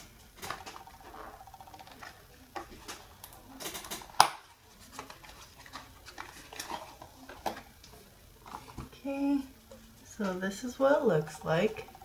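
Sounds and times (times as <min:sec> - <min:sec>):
packaging rustling: 0:04.0 - 0:07.6.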